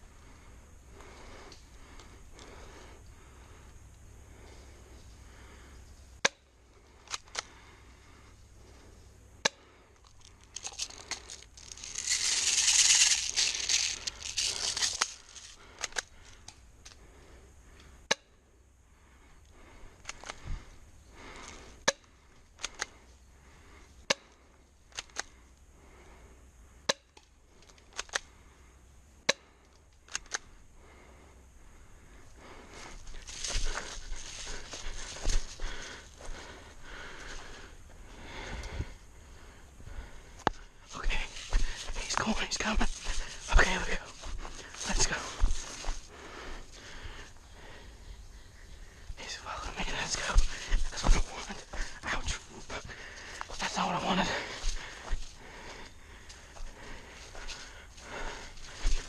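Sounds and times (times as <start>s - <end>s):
rustling hissing noise: 10.0s - 17.1s, 31.9s - 59.0s.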